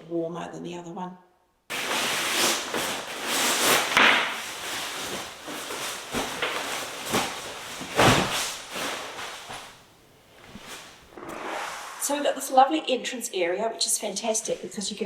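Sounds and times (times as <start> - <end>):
footsteps: 1.7 - 11.4
steady rushing noise: 11.1 - 12.6.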